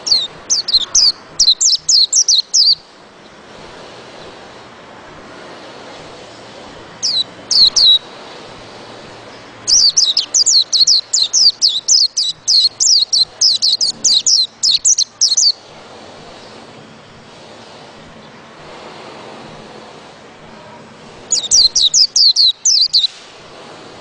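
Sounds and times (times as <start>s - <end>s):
bird singing: 0.0s - 3.4s, 7.0s - 8.0s, 9.2s - 15.6s, 21.3s - 23.2s
background hiss: 0.0s - 24.0s.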